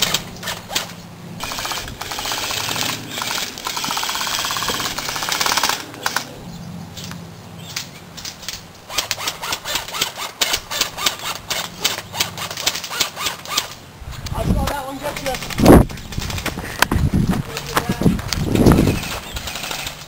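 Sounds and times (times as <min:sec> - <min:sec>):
airsoft gun full-auto burst: 0:00.0 - 0:06.3, 0:18.9 - 0:20.0
sharp irregular clicks and snaps: 0:00.0 - 0:06.3, 0:07.0 - 0:16.9.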